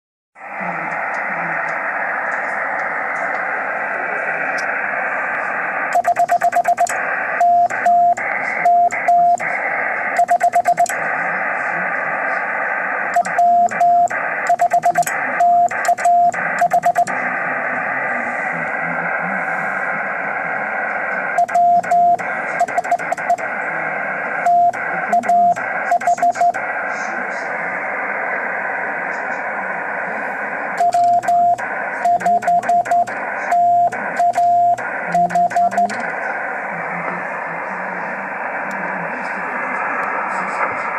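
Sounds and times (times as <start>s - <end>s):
radio receiver hiss: 0.4s - 40.9s
morse code beeps: 5.9s - 9.4s, 10.2s - 10.9s, 13.2s - 17.1s, 21.4s - 23.5s, 24.4s - 26.6s, 30.8s - 36.0s.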